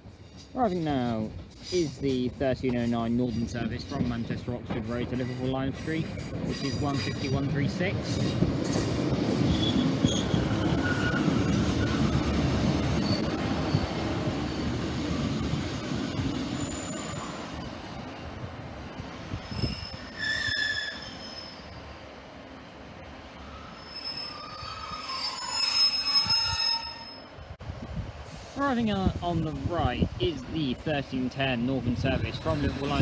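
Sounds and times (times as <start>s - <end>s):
train rumble: 0.0s - 26.6s, 27.3s - 33.0s
train wheel squeals: 1.4s - 2.3s, 8.0s - 12.2s, 12.8s - 15.3s, 16.5s - 17.9s, 19.4s - 21.8s, 23.6s - 27.3s.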